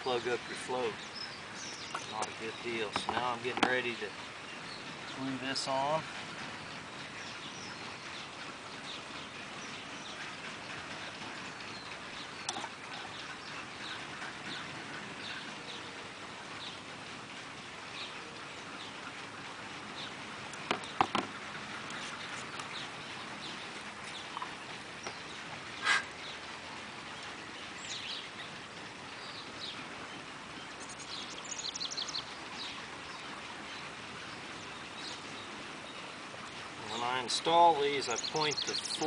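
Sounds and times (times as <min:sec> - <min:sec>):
birds chirping and calling: 0:00.0 - 0:39.0
sharp knocks: 0:20.7 - 0:21.3.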